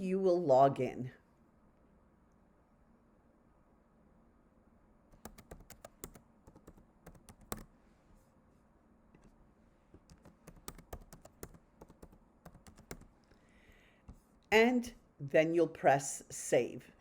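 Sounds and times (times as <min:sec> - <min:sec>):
typing on computer keyboard: 0:05.1 - 0:07.7, 0:10.0 - 0:13.2.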